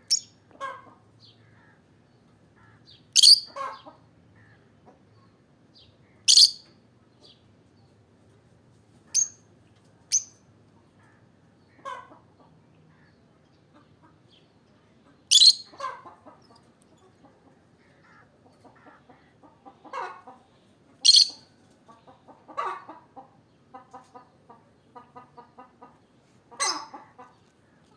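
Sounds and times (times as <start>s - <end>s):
bird chirping: 0.0s - 0.4s, 2.9s - 3.6s, 5.8s - 8.0s, 15.2s - 17.4s, 20.2s - 22.3s
rough bird calls: 15.1s - 24.3s, 24.9s - 27.9s.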